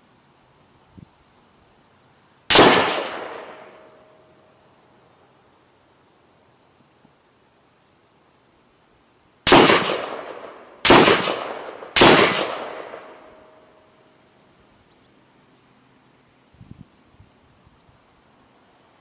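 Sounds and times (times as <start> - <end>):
rifle shots echoing: 2.5 - 4.0, 9.5 - 13.5.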